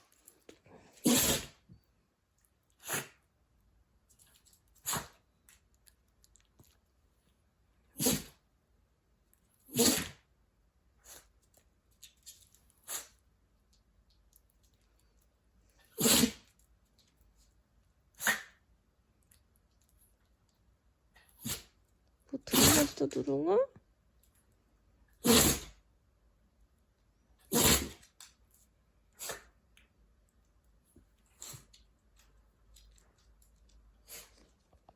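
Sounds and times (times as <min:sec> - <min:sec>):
pet coughing: 0:22.4 - 0:23.3.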